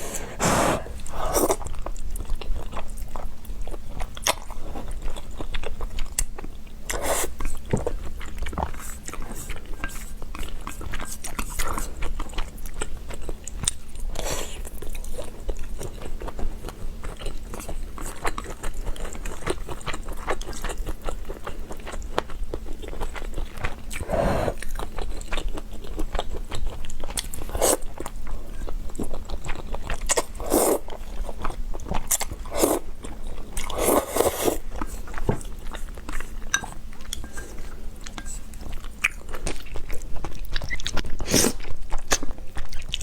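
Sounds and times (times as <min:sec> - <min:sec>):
noisy slurping sounds: 0:00.0 - 0:01.6.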